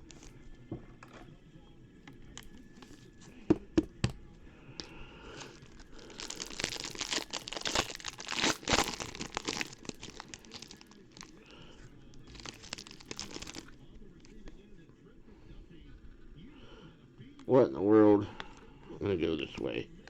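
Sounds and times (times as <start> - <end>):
plastic wrapper crinkling and tearing: 2.0 - 3.4, 4.8 - 14.6.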